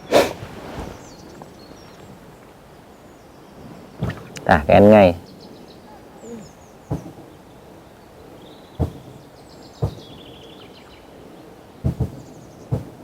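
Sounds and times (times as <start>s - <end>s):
outdoor background noise: 0.0s - 13.0s
birds singing: 0.8s - 13.0s
dull knocks: 8.8s - 9.1s, 9.8s - 10.1s, 11.8s - 13.0s.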